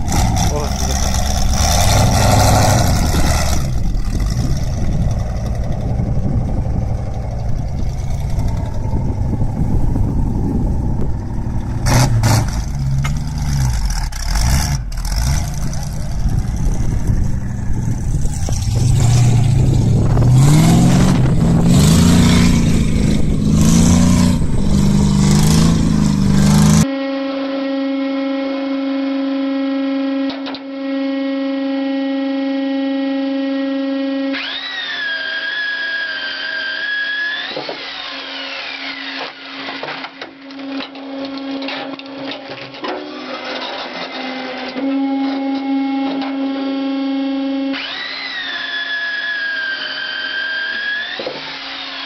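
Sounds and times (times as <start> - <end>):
heavy machinery engine under load: 0.0 - 26.9
muffled machine hum: 2.8 - 13.9, 14.8 - 34.2.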